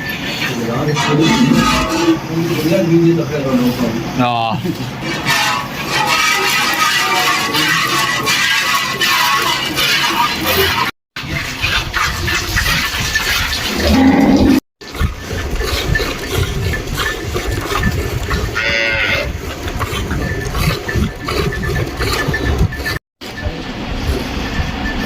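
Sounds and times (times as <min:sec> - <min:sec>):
shorter higher cattle call: 0:01.0 - 0:02.2
cow mooing: 0:01.1 - 0:02.2, 0:13.8 - 0:14.6, 0:18.6 - 0:19.3.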